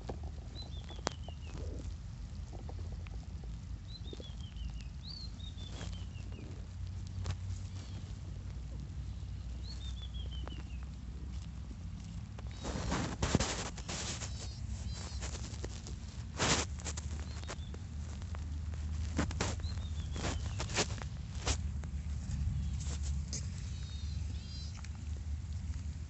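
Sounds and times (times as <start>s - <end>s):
horse stomach growling: 0.0s - 4.7s
bird chirping: 0.4s - 1.8s, 3.8s - 6.6s, 9.0s - 10.9s, 12.5s - 15.8s, 17.0s - 17.8s, 19.1s - 21.5s, 22.5s - 24.9s
short rustling: 12.4s - 24.0s.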